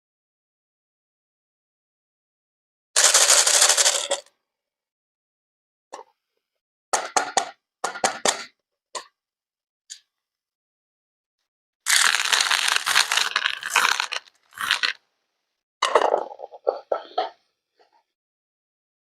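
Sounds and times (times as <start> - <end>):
crunching and crackling: 11.9 - 15.0.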